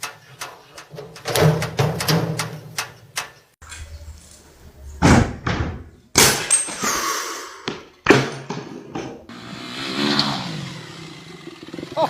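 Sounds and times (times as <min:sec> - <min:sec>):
knocks and thuds: 0:01.0 - 0:02.8, 0:05.0 - 0:06.4.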